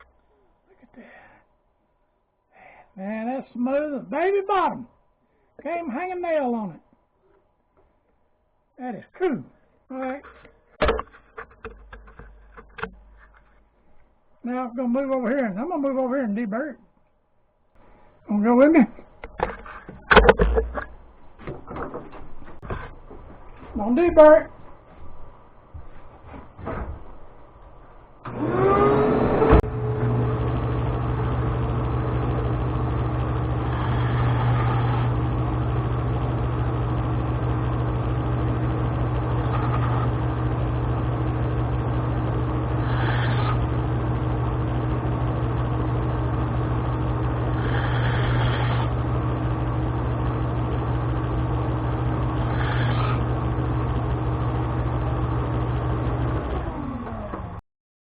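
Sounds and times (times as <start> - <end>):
grinding steel: 28.2 - 57.5
bench grinder humming: 28.2 - 57.6.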